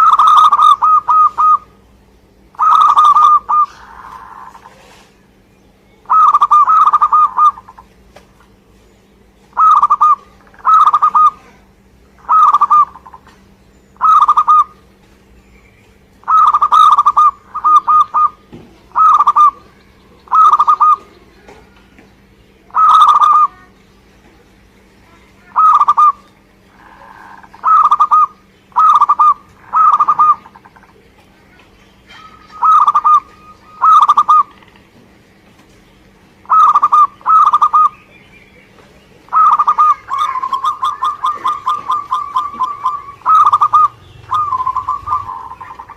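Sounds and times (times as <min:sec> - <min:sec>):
dove cooing: 0:00.0 - 0:01.8, 0:02.5 - 0:05.1, 0:06.0 - 0:07.9, 0:09.5 - 0:15.0, 0:16.2 - 0:21.8, 0:22.7 - 0:23.7, 0:25.4 - 0:31.0, 0:32.0 - 0:35.0, 0:36.4 - 0:38.0, 0:39.3 - 0:45.9.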